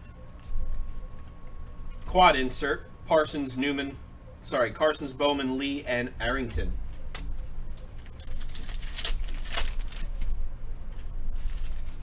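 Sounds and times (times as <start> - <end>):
low steady rumble: 0.0 - 12.0
card wrappers rustling and tapping: 6.9 - 12.0.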